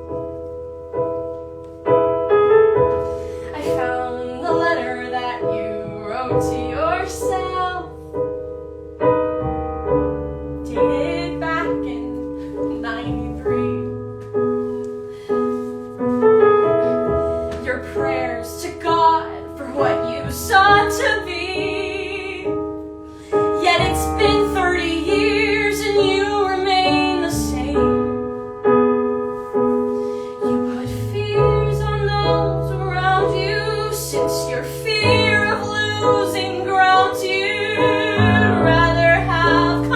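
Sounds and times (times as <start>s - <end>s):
piano accompaniment: 0.0s - 39.9s
woman singing classical song: 3.1s - 8.1s, 10.6s - 15.6s, 16.6s - 28.4s, 30.1s - 39.9s.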